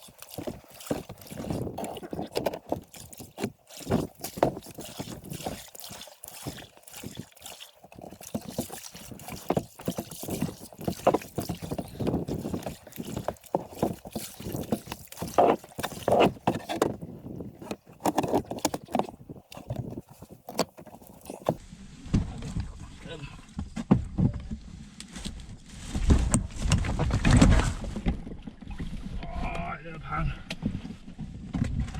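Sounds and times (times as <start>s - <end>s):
water splashing: 0.0s - 21.6s.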